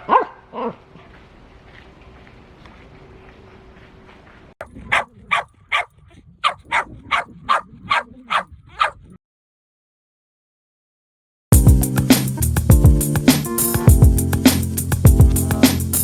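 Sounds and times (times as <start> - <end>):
dog barking sharply: 4.6 - 9.0.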